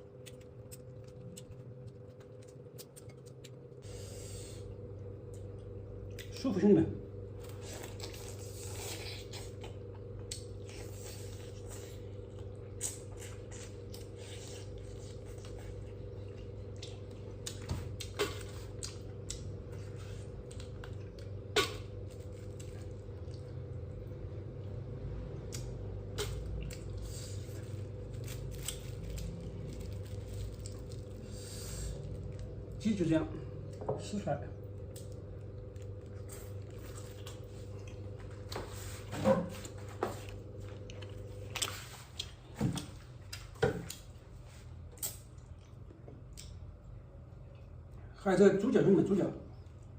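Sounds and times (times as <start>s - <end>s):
person chewing: 0.0s - 6.3s, 7.4s - 24.1s, 25.5s - 32.8s, 34.8s - 44.2s, 44.9s - 47.8s
steady low hum: 0.0s - 49.9s.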